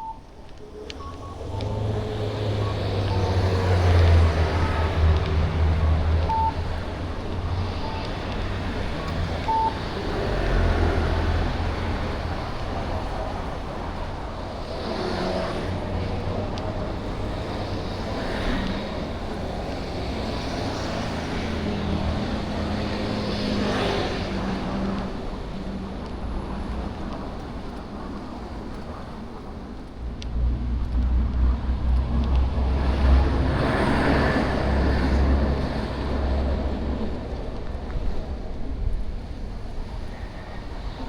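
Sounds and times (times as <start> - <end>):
short high beeps: 0.0 - 3.6, 6.3 - 6.6, 9.5 - 9.8
vehicles driving past: 0.6 - 41.0.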